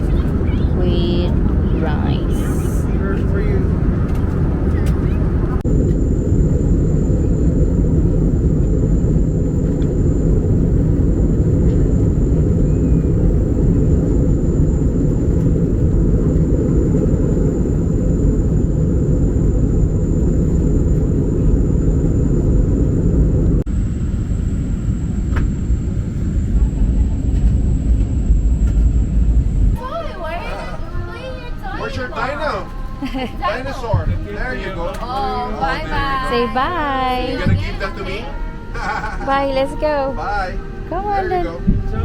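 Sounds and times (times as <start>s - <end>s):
airplane cabin engine rumble: 0.0s - 42.0s
thin high whine: 5.7s - 26.5s.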